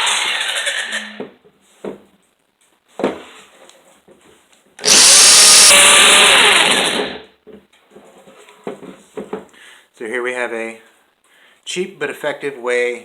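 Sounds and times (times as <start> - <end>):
electric drill spinning: 4.8 - 7.2.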